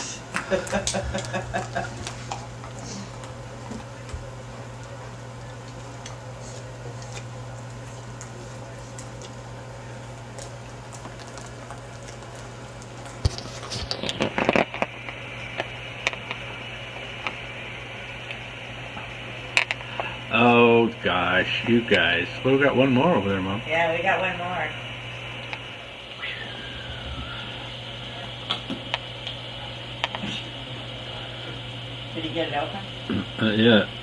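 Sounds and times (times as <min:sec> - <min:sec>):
steady high whine: 0:00.0 - 0:34.0
steady low hum: 0:00.0 - 0:34.0
dogs chewing and licking toys: 0:00.7 - 0:04.9, 0:05.6 - 0:09.4, 0:10.0 - 0:14.9.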